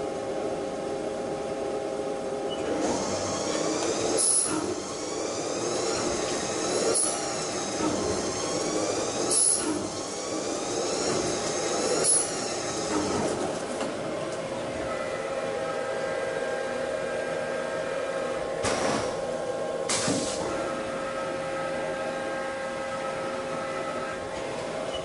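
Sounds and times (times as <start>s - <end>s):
machine hum: 0.0s - 25.0s
high metal cutting whine: 2.6s - 13.5s.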